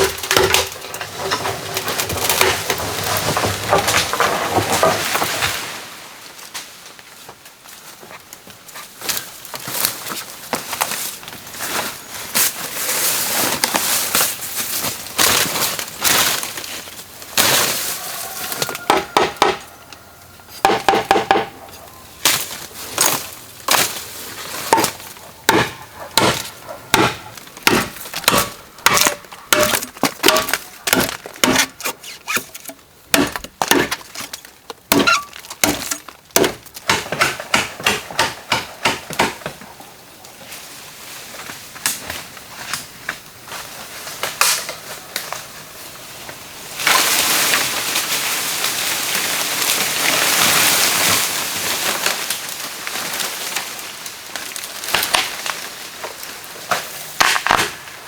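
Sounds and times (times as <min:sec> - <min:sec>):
bamboo knocked with hand tool: 0:18.9 - 0:19.6, 0:20.6 - 0:21.6, 0:24.7 - 0:34.1.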